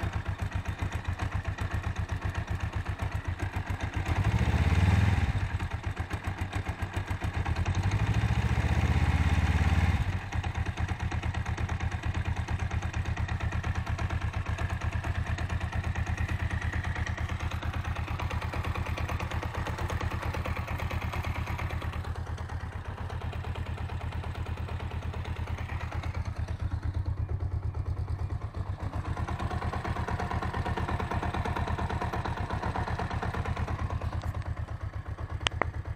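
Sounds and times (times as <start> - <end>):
motorcycle engine idling: 0.0 - 35.9.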